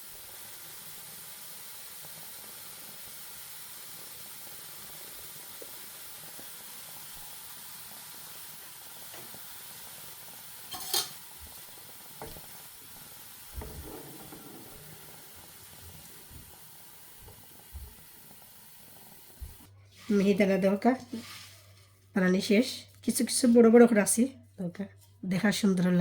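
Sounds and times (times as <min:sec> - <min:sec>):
hot oil sizzling: 0:00.0 - 0:20.3
utensil clattering against pan: 0:10.7 - 0:11.2, 0:13.6 - 0:15.4
utensil knocking on pan: 0:13.6 - 0:15.4.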